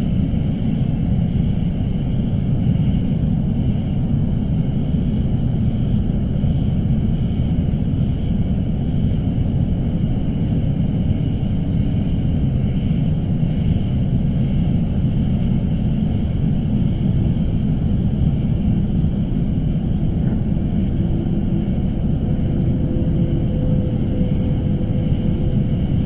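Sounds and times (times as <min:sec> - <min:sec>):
low rumble: 0:16.1 - 0:26.0.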